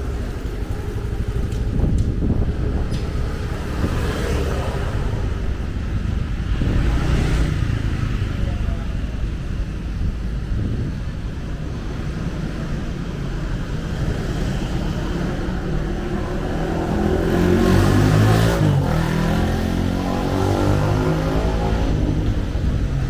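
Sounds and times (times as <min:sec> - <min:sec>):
traffic engines rumbling: 0:00.0 - 0:23.0
vehicle passing close by: 0:01.7 - 0:08.8, 0:13.6 - 0:23.0.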